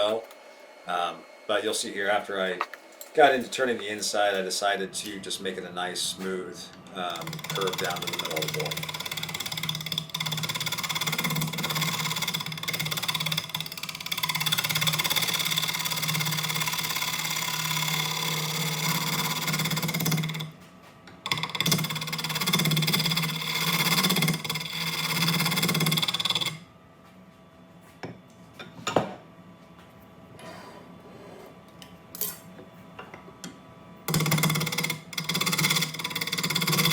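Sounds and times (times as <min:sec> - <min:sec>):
wood lathe humming: 0:07.0 - 0:20.6, 0:21.3 - 0:26.6, 0:34.1 - 0:36.9
turning tool cutting wood: 0:07.1 - 0:20.5, 0:21.3 - 0:26.6, 0:34.1 - 0:36.9.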